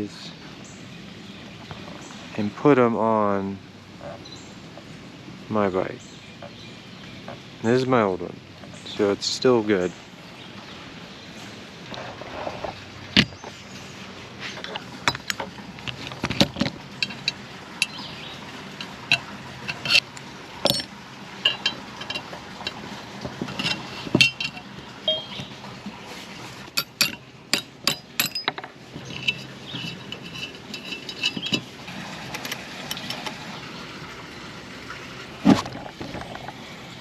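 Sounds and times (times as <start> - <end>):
metal fasteners and tools clinking: 14.5 - 25.5, 26.8 - 33.3.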